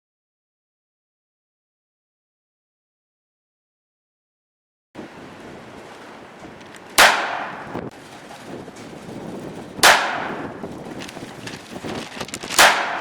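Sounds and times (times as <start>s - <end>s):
revolver shots: 7.0s - 7.9s, 9.8s - 10.6s, 12.5s - 13.0s.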